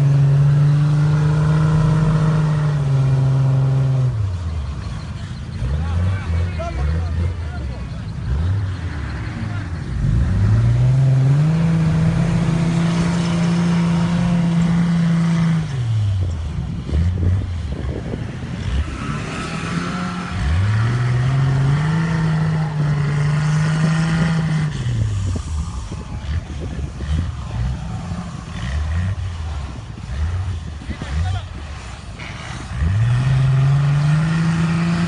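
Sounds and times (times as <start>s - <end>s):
engine revving hard: 0.0s - 4.2s, 10.0s - 15.8s, 16.9s - 25.4s, 32.2s - 35.0s.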